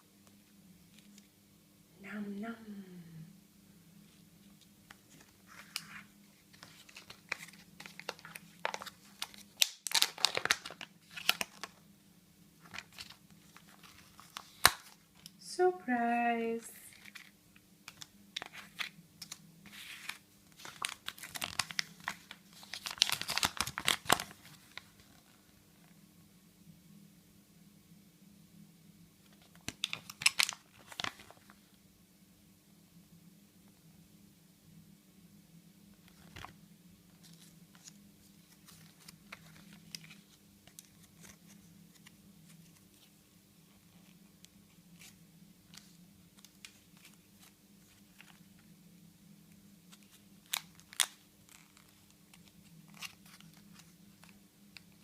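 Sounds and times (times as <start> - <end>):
plastic packaging crinkling and tearing: 5.1 - 11.8, 12.6 - 15.4, 16.9 - 25.4, 29.3 - 31.6, 37.2 - 43.1, 49.9 - 55.0.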